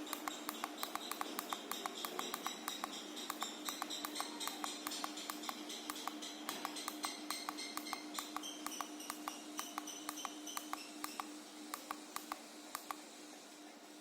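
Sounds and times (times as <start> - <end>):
electric fan humming and ticking: 0.0 - 14.0.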